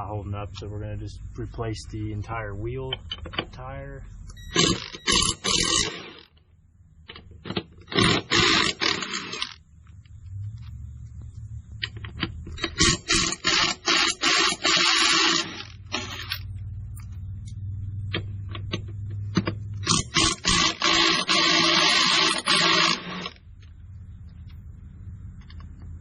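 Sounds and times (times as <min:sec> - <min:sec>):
steady low hum: 0:00.0 - 0:26.0
impact wrench rattling: 0:04.5 - 0:06.3, 0:12.5 - 0:16.5, 0:18.6 - 0:23.4.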